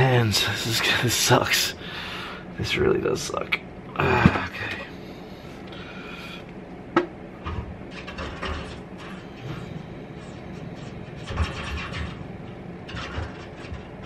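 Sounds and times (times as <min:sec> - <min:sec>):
bird scratching and fluttering: 0:07.5 - 0:14.0.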